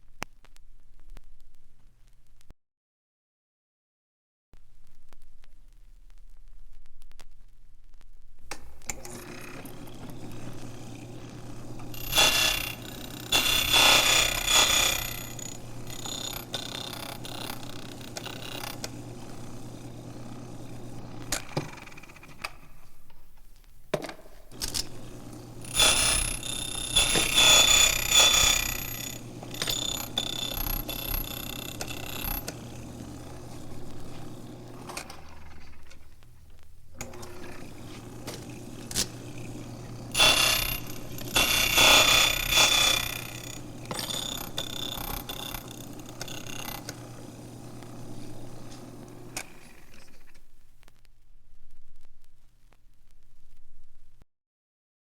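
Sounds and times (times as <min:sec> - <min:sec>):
bell ringing: 0:25.7 - 0:32.1
low hum and hiss: 0:26.9 - 0:41.2.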